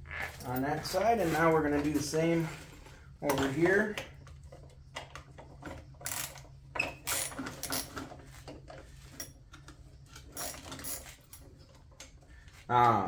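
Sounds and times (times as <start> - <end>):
hand tools clattering: 0.3 - 4.1.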